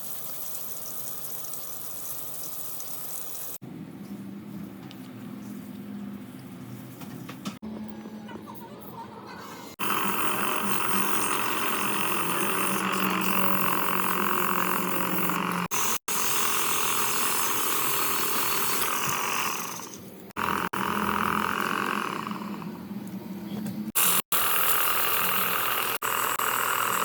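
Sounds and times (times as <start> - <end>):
small electric motor tool whirring: 9.7 - 22.8, 23.9 - 27.0.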